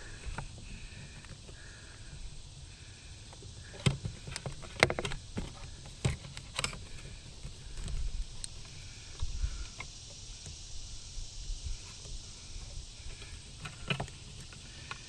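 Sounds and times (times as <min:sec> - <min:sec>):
steady low rumble: 0:00.0 - 0:06.0, 0:06.8 - 0:15.0
sharp clicks and knocks: 0:03.3 - 0:10.6.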